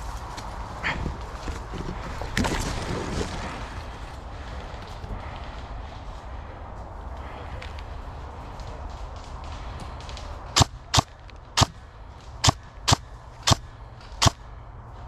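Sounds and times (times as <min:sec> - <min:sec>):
airsoft gun shots: 0:12.4 - 0:14.4.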